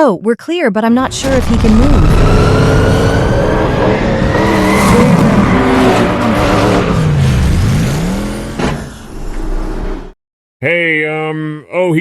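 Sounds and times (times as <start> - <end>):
car engine revving: 1.1 - 10.2.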